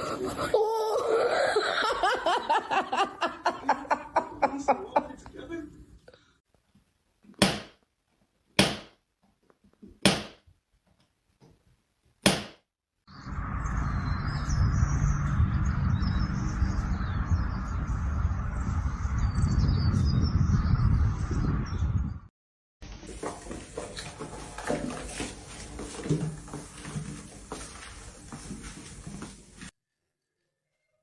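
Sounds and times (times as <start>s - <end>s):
birds chirping: 13.1s - 22.2s
steady low rumble: 13.1s - 22.2s.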